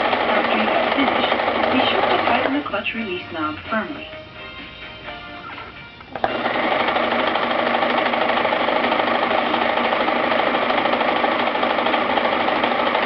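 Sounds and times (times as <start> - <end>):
sewing machine clatter: 0.0 - 2.6, 6.2 - 13.0.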